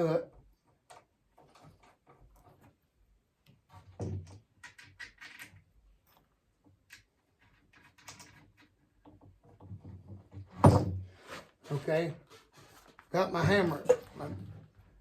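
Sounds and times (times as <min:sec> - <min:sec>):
small metal clicks and taps: 0:04.3 - 0:09.3.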